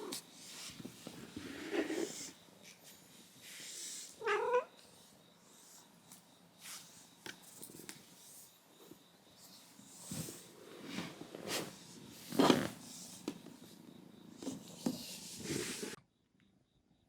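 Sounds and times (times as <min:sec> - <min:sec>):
cat meowing: 0:04.2 - 0:04.7.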